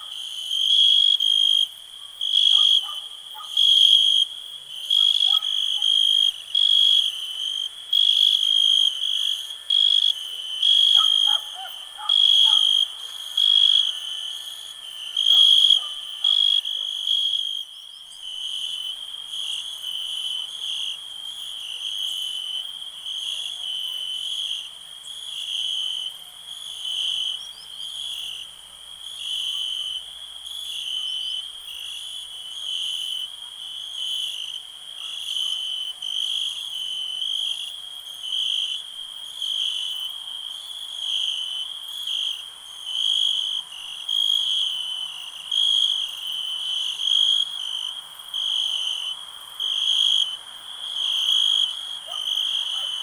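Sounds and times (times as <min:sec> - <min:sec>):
faint frog calls: 0:00.0 - 0:17.7
crickets chirping: 0:00.0 - 0:53.0.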